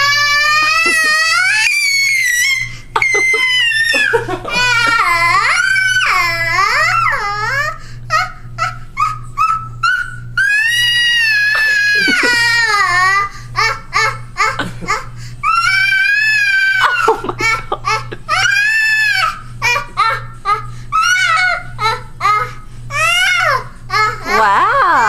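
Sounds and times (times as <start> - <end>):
baby wailing high-pitched: 0.0 - 14.6, 15.4 - 25.0
baby babbling yelps: 5.3 - 12.8, 20.0 - 24.5.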